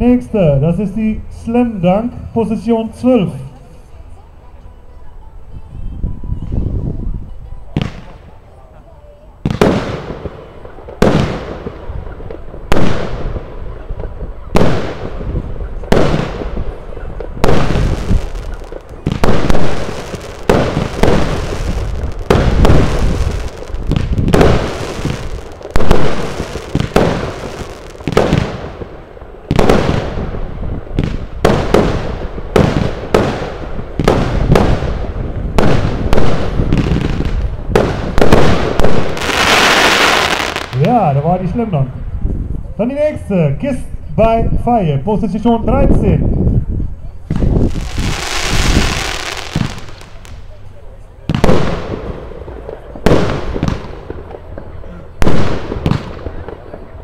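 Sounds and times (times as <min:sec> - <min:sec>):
firework crackling: 0:07.4 - 0:42.3, 0:47.2 - 0:57.0
firework cake shots: 0:14.0 - 0:28.9.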